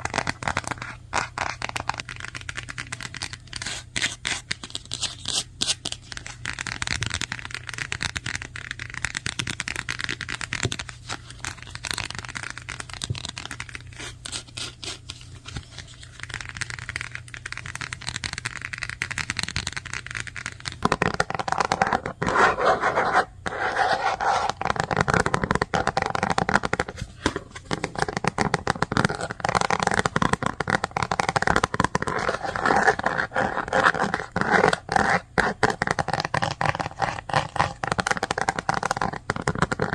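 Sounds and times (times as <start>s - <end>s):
fast typing on keyboard: 6.2s - 13.8s, 16.2s - 22.2s.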